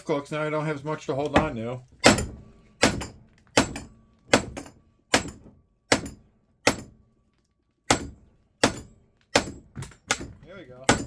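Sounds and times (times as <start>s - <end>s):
hammer striking steel core: 1.4s - 7.1s, 7.9s - 11.0s.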